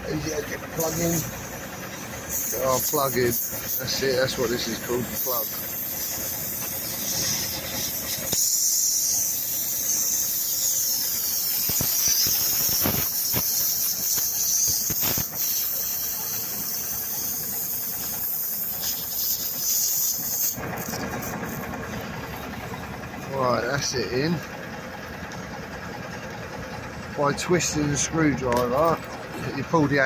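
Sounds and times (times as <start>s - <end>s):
air hissing from tyre: 0.1s - 23.0s.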